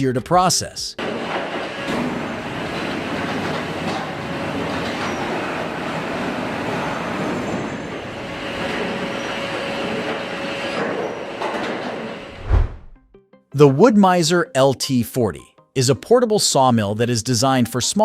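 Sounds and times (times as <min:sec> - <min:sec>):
ring debarker machine running: 0:01.0 - 0:12.3.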